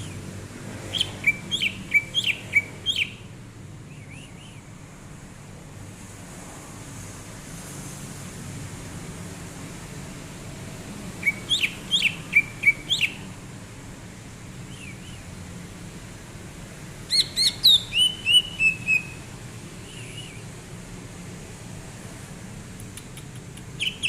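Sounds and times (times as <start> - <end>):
bird singing sharp whistled notes: 0.9 - 3.2, 3.9 - 4.6, 11.2 - 13.2, 14.7 - 15.2, 17.1 - 19.2, 19.8 - 20.5, 23.8 - 24.0
steady background hiss: 7.0 - 24.0.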